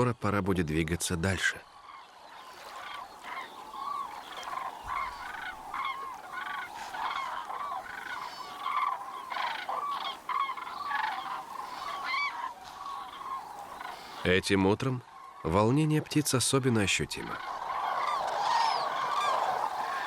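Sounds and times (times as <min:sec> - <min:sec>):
cranes trumpeting calls: 0:01.7 - 0:14.3, 0:17.3 - 0:20.0.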